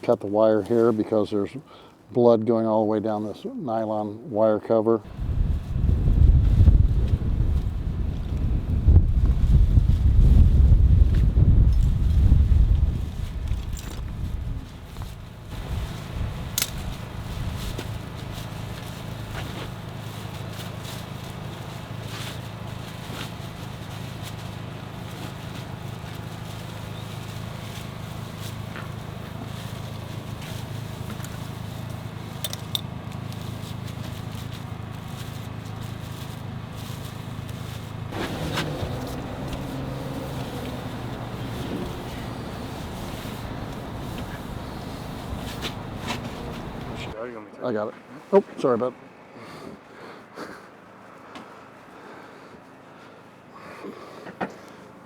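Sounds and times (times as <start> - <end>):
wind rumble on microphone: 5.1 - 19.4, 38.0 - 47.2
tools clicking and scraping: 32.4 - 32.9
steady low hum: 37.8 - 47.2.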